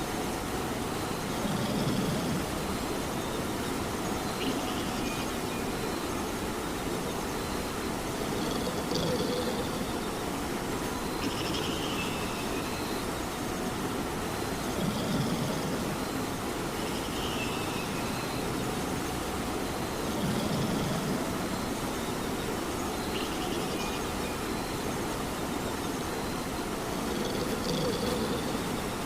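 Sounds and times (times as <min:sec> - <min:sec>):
steady rain: 0:00.0 - 0:29.0
cat snoring: 0:01.3 - 0:02.5, 0:08.2 - 0:09.9, 0:14.7 - 0:15.8, 0:20.1 - 0:21.2, 0:26.9 - 0:28.8.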